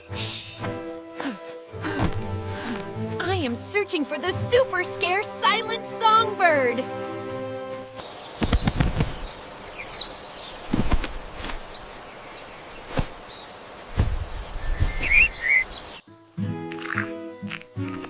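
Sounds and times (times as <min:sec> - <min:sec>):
dull thumps: 0:01.9 - 0:02.4
bird chirps: 0:08.0 - 0:10.8, 0:11.6 - 0:16.2.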